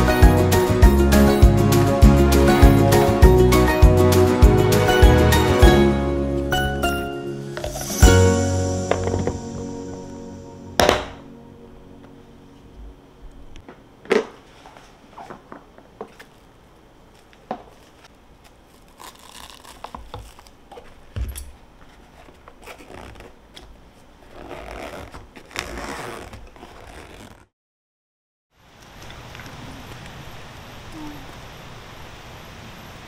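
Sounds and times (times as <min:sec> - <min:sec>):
rustling and scraping: 0:14.2 - 0:16.5, 0:17.1 - 0:27.4.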